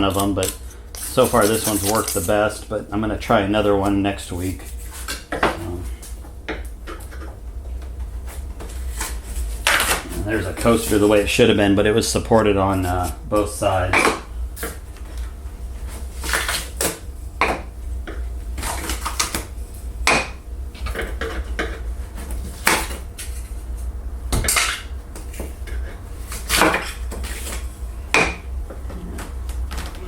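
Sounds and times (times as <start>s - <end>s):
wood scraping: 0.0s - 2.8s, 8.2s - 11.4s.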